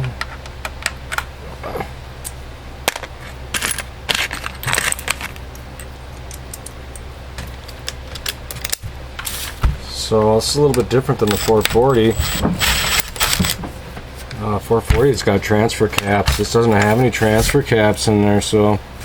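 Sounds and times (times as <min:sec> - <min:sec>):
low steady hum: 0:00.0 - 0:19.0
metal tools clinking and rattling: 0:11.2 - 0:13.7.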